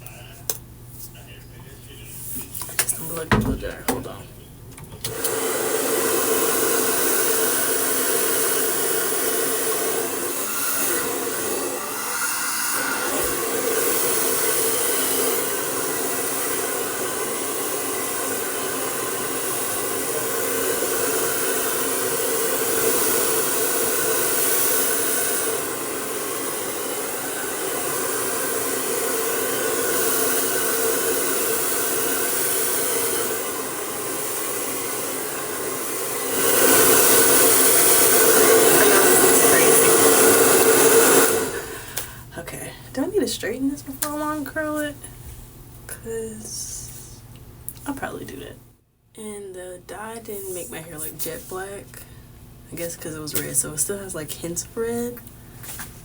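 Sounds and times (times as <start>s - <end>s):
hair dryer blowing: 5.0s - 42.3s.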